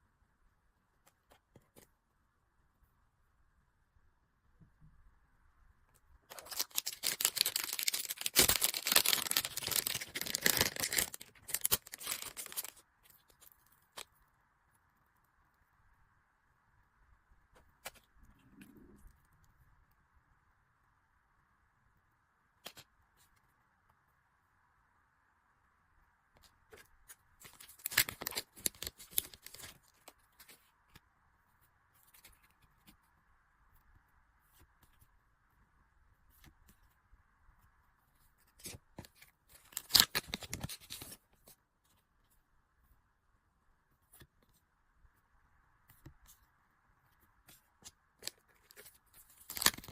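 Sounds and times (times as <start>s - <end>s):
packaging tearing and crinkling: 6.3s - 12.8s, 27.4s - 29.8s, 39.6s - 41.1s, 48.2s - 49.9s.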